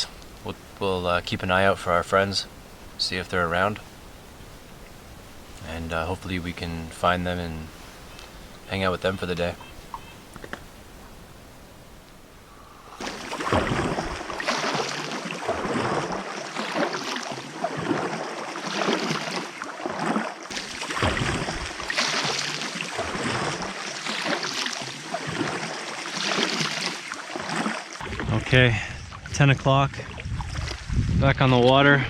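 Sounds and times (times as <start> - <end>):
wind buffeting microphone: 0.0 - 14.5, 28.0 - 32.0
paddle splashing through water: 1.5 - 31.0.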